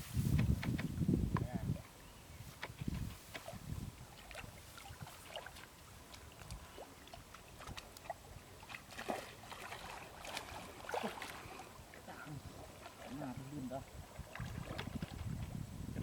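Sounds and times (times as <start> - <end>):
shallow water splashing: 3.3 - 15.5.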